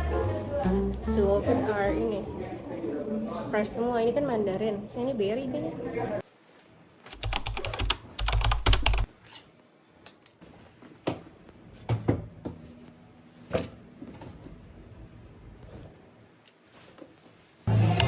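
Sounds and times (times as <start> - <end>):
rapid clattering clicks: 7.1 - 9.1.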